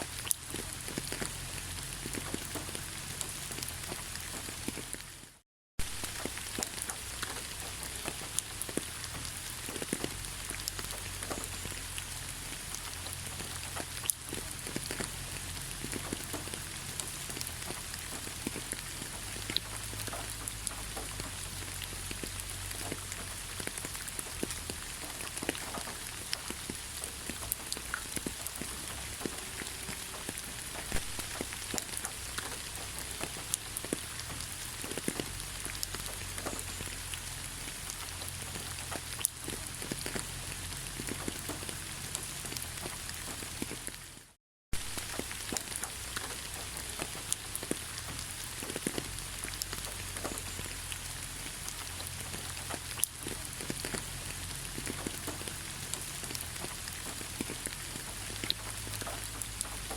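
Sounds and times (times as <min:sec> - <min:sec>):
rain hiss: 0:00.0 - 0:59.9
raindrops ticking on a surface: 0:00.0 - 0:59.9.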